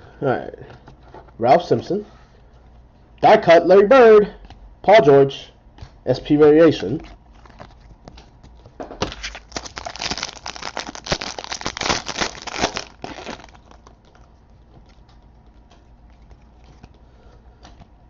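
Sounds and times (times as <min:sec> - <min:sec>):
foil wrapper tearing and crinkling: 0:09.0 - 0:14.3.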